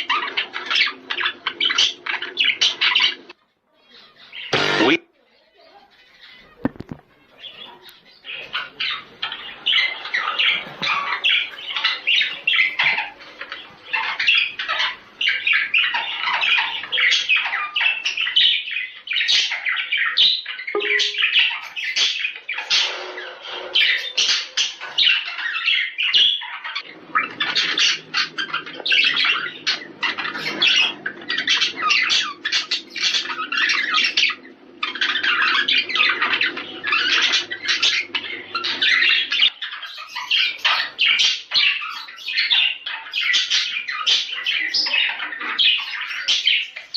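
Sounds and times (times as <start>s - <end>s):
budgerigar warbling: 4.5s - 5.0s.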